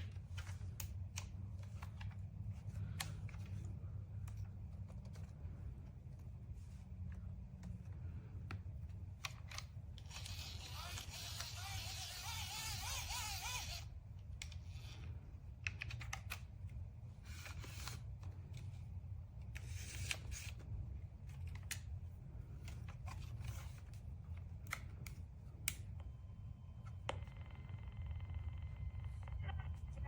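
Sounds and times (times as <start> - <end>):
steady low hum: 0.0 - 30.0
small handling clicks: 12.6 - 16.8.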